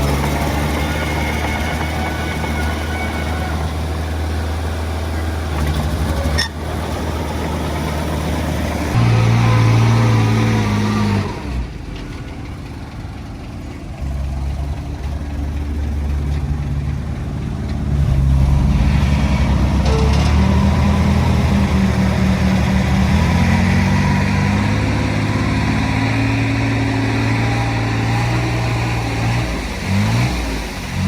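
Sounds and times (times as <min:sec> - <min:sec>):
diesel engine running: 0:00.0 - 0:31.0.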